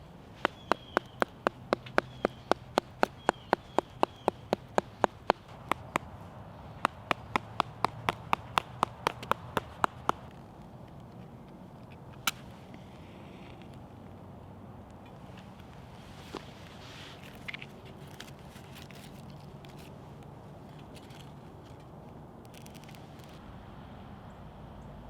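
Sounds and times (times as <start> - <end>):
sharp knocks on wood: 0.4 - 6.1, 6.8 - 10.2.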